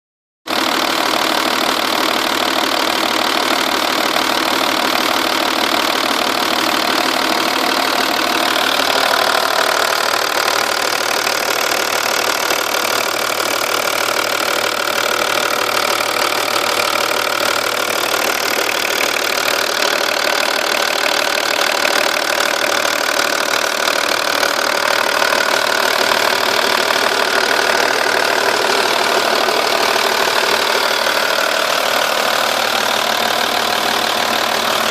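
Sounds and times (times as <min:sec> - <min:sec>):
diesel engine idling: 0:00.5 - 0:34.9
fast light engine ticking: 0:00.5 - 0:34.9.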